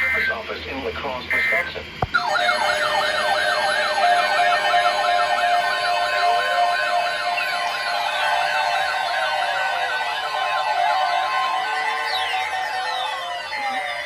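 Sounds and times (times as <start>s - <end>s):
electronic siren yelp: 0.0s - 0.4s, 1.3s - 14.0s
steady held siren tones: 0.0s - 0.4s, 1.3s - 14.0s
rising and falling siren sweeps: 2.2s - 14.0s.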